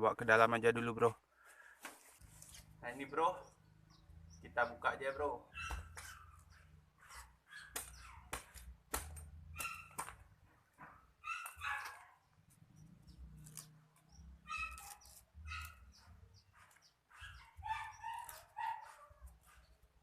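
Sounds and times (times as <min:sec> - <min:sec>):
dog barking: 0:05.5 - 0:06.4, 0:07.4 - 0:08.4, 0:09.6 - 0:10.0, 0:10.9 - 0:12.3, 0:14.4 - 0:19.6.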